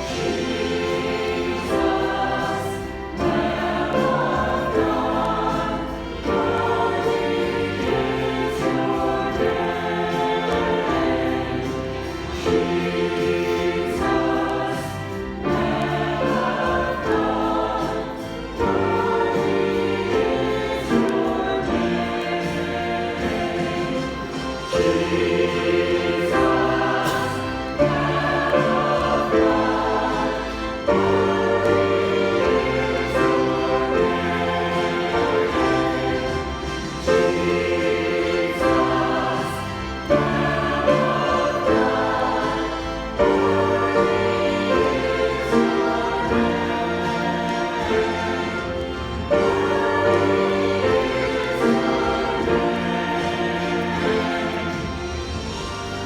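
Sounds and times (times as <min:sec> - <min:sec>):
choir singing a hymn: 0:00.0 - 0:56.0
instrumental accompaniment: 0:00.0 - 0:56.0.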